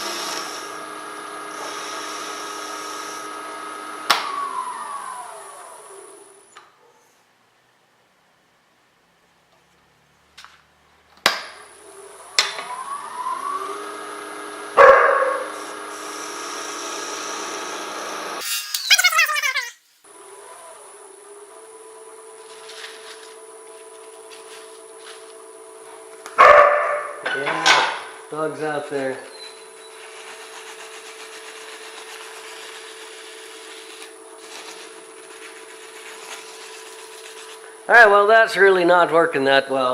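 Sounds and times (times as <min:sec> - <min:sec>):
wood lathe motor whining: 0:00.0 - 0:06.4, 0:11.8 - 0:18.4, 0:28.2 - 0:38.3
rasping rubbing on wood: 0:29.8 - 0:37.7.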